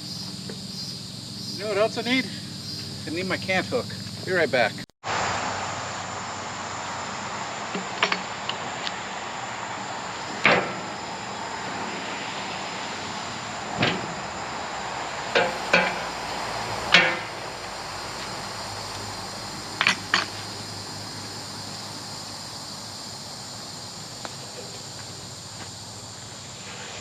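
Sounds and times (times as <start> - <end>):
steady background hiss: 0.0 - 27.0
knocks and clunks: 10.4 - 10.9, 13.7 - 14.2, 15.3 - 16.2, 16.9 - 17.4.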